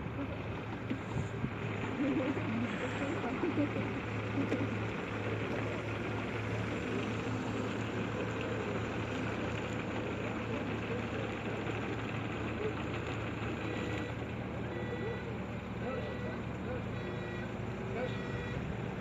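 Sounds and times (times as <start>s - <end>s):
diesel engine idling: 0.0s - 19.0s.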